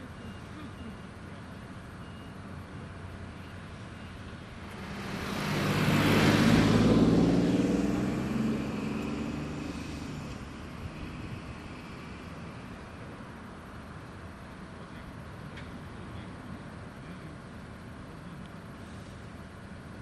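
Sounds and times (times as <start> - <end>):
diesel railcar engine hum: 0.0 - 20.0
wheels rushing on rails: 2.7 - 14.7.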